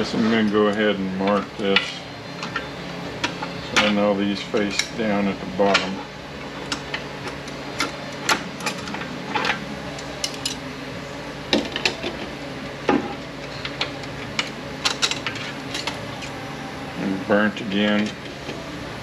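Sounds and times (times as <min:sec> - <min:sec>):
metal parts clinking and clanking: 0:00.2 - 0:06.0, 0:06.6 - 0:10.7, 0:13.5 - 0:16.4.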